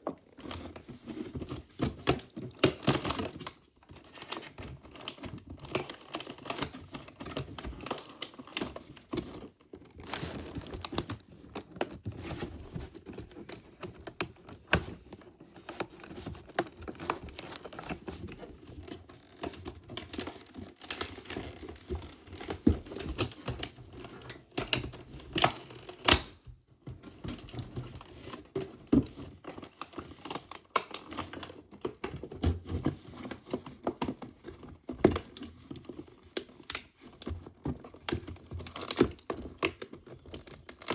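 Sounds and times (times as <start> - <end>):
plastic wrappers crinkling: 1.2 - 26.3.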